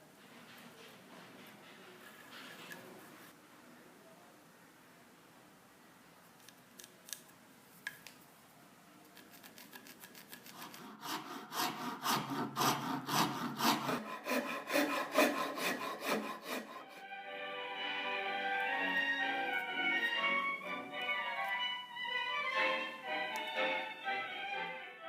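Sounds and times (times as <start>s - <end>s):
hand tool rasping on wood: 9.4s - 17.0s
music with held notes: 16.8s - 25.0s.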